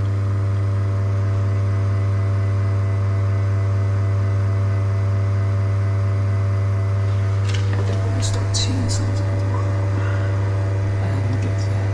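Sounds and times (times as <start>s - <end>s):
espresso machine pump humming: 6.4s - 11.9s.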